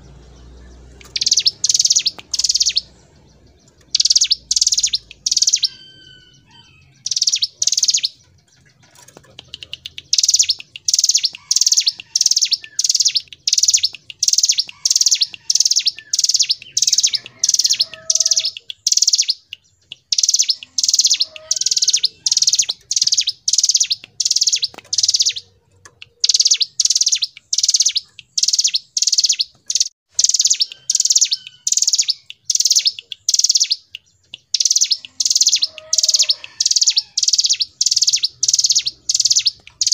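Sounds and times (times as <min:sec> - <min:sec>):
bird singing buzzy notes: 0:00.0 - 0:08.7, 0:09.4 - 0:39.9.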